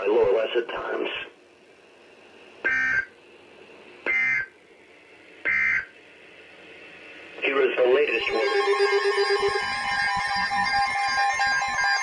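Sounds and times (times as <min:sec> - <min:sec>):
emergency alert data tones: 0:02.7 - 0:03.1, 0:05.5 - 0:05.9, 0:07.9 - 0:12.0.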